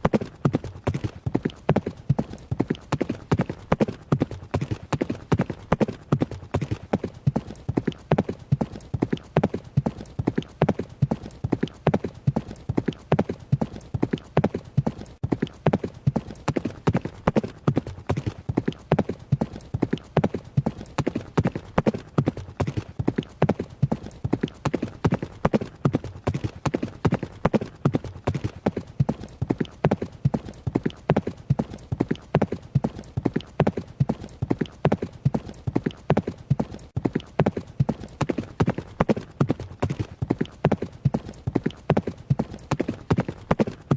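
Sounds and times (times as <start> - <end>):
horse hooves galloping: 0.0 - 43.9.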